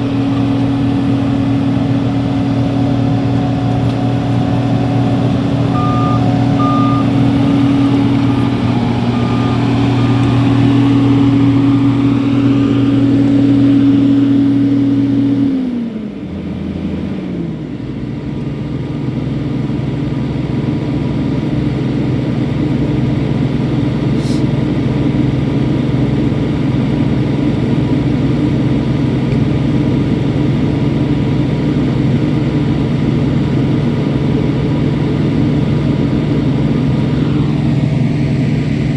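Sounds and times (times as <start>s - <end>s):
warning beeper: 0.0s - 13.4s
heavy diesel engine running: 0.0s - 38.9s.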